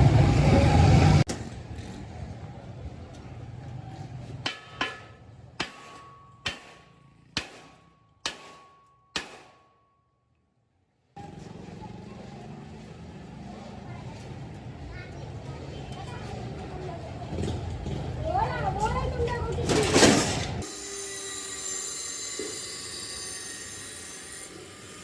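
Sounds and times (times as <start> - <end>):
workshop background noise: 0.0 - 9.9, 11.0 - 25.0
sharp ringing metallic strikes: 4.5 - 10.0.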